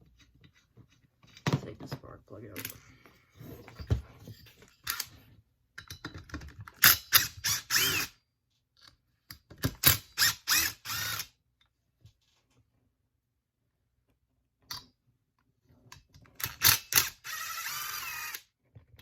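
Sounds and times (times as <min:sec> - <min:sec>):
wrench ratcheting and scraping: 0:04.7 - 0:05.2, 0:05.9 - 0:08.2, 0:09.8 - 0:11.3, 0:16.4 - 0:18.5.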